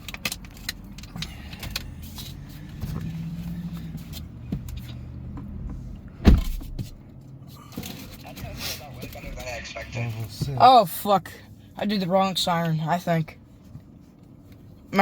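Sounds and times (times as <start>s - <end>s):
loud thump: 6.2s - 6.9s.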